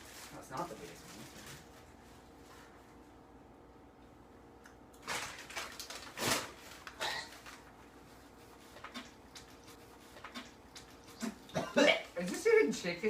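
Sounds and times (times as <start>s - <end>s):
paper wrapper crinkling: 5.0s - 7.8s.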